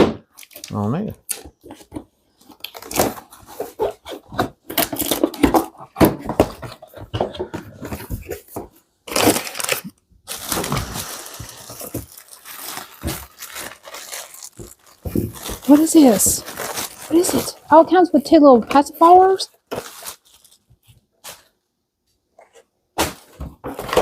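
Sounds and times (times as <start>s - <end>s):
plastic packaging crinkling: 9.0s - 17.8s, 19.5s - 21.6s.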